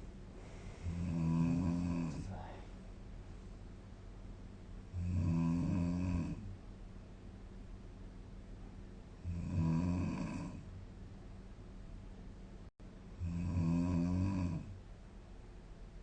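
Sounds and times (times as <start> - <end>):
quiet breathing: 0.0 - 3.7
woman snoring: 0.8 - 2.5, 4.9 - 6.5, 9.2 - 10.6, 13.2 - 14.8.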